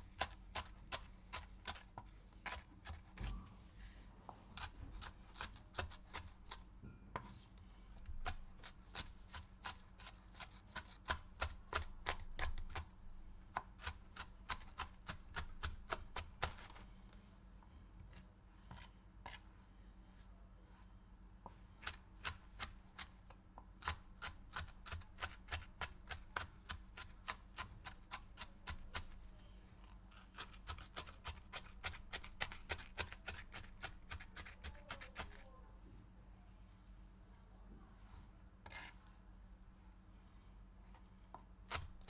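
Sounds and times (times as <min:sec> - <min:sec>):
knife chopping on cutting board: 0:00.2 - 0:03.4, 0:04.6 - 0:07.3, 0:08.1 - 0:12.9, 0:13.5 - 0:16.8, 0:23.8 - 0:29.2, 0:30.3 - 0:35.4, 0:41.7 - 0:42.0.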